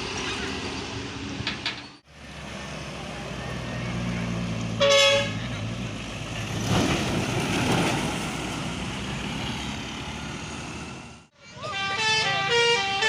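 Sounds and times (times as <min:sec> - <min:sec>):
bus engine running: 0:00.0 - 0:13.0
bus horn toot: 0:04.7 - 0:05.6, 0:11.4 - 0:13.0.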